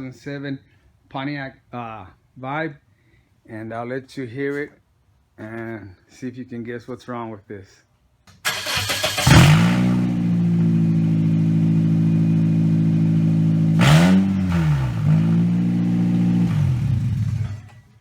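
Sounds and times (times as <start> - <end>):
loud car engine idling and revving: 8.5 - 17.8.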